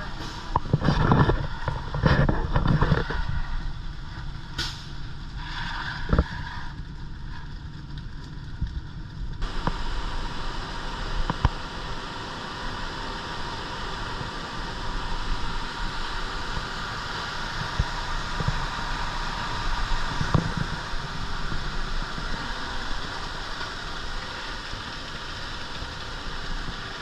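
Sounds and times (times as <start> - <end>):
diesel engine running: 0.0 - 6.0, 6.6 - 27.0
sharp knocks and scrapes: 0.2 - 3.7.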